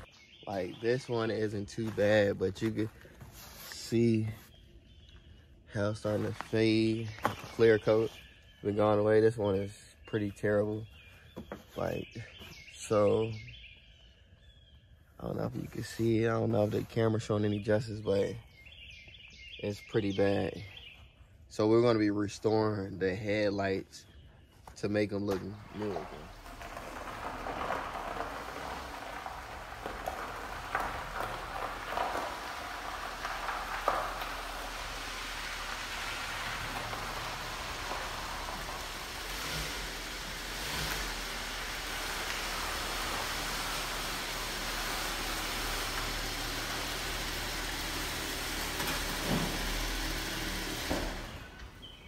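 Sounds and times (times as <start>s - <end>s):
steady rain falling: 25.6s - 51.7s.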